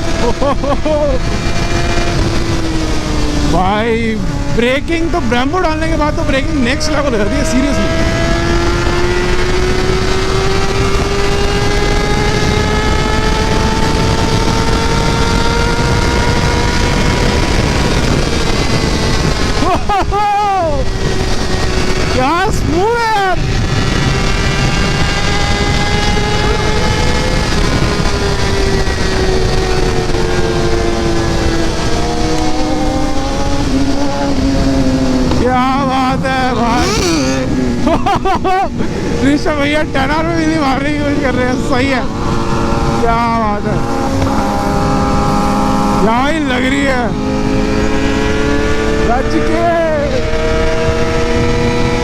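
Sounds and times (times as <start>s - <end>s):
motorcycle engine at speed: 0.0s - 52.0s
wind and road noise: 0.0s - 52.0s
motorcycle engine under load: 23.5s - 39.4s.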